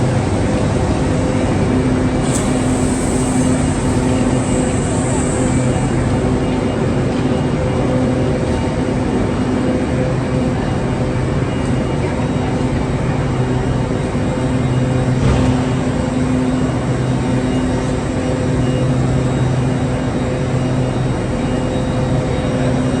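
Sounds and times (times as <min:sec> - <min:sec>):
train rumbling: 0:00.0 - 0:07.3.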